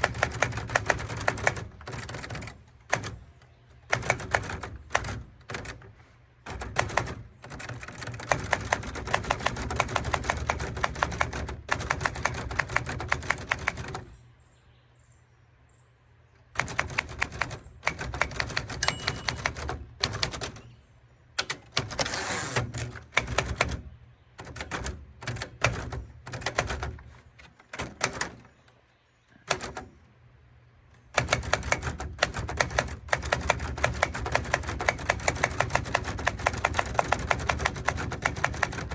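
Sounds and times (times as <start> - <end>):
typewriter key strikes: 16.6 - 20.7, 21.4 - 28.5, 31.2 - 38.9.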